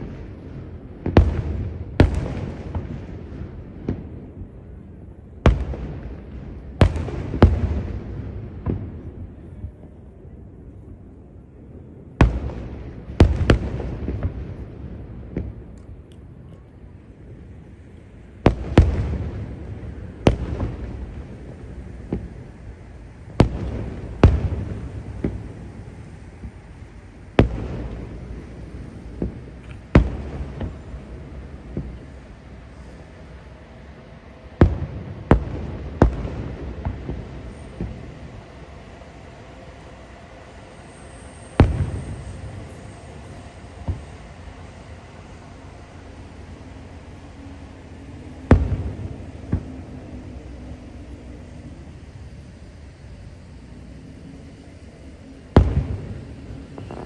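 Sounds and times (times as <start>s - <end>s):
firework booms with rumbling echo: 0.0s - 11.1s, 11.8s - 15.7s, 17.2s - 39.3s, 40.9s - 52.5s, 55.4s - 57.0s
fireworks shells bursting: 34.7s - 50.1s.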